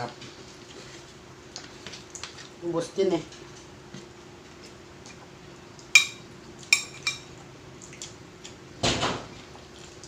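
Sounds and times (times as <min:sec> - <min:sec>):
cutlery clinking against plates: 0:06.0 - 0:07.3.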